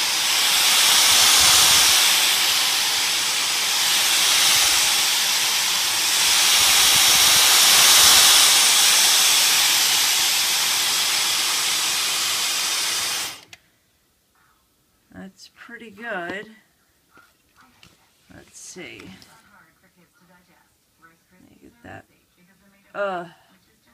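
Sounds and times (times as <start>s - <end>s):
handheld vacuum hissing: 0.0s - 13.6s.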